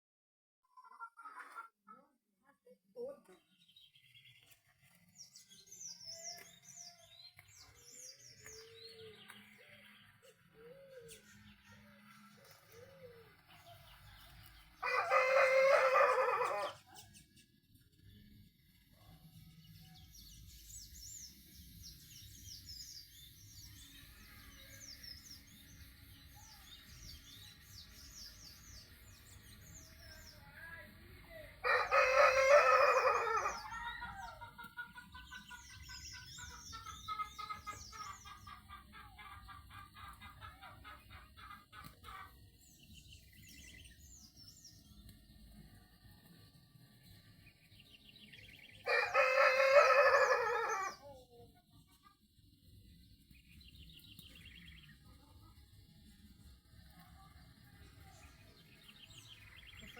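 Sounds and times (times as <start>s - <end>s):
small birds chirping: 0.7s - 59.9s
rooster crowing: 14.8s - 16.8s, 31.6s - 34.4s, 48.8s - 51.0s
hens clucking: 31.7s - 42.5s.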